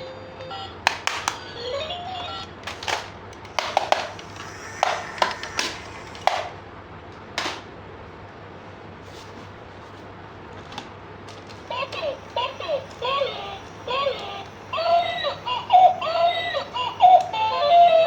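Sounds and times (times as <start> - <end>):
plastic toy parts clicking: 2.6 - 6.5.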